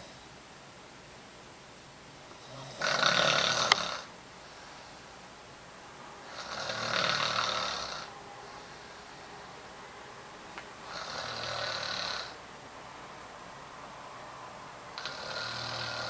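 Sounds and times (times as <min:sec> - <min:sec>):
person snoring loudly: 0:02.4 - 0:04.1, 0:06.2 - 0:09.1, 0:10.8 - 0:12.4, 0:15.0 - 0:16.0.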